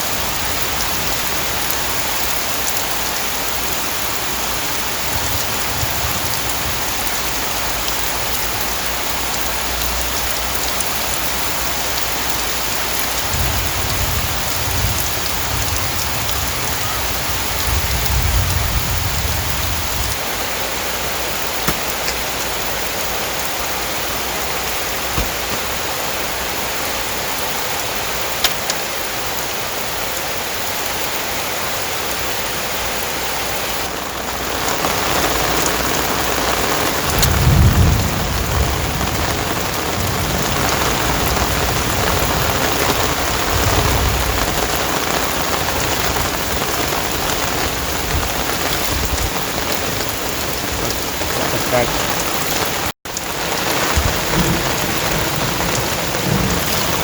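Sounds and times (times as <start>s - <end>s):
heavy rain pouring: 0.0s - 57.0s
thunder rumbling: 12.7s - 26.7s, 33.8s - 57.0s.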